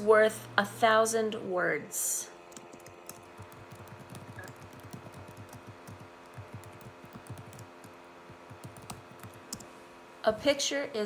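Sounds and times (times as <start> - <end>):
typing on keyboard: 2.5 - 9.7.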